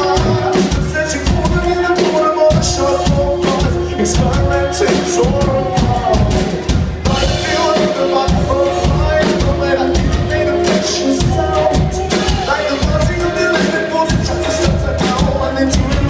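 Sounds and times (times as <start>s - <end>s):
drum kit beat: 0.0s - 16.0s
live indie pop band: 0.0s - 16.0s.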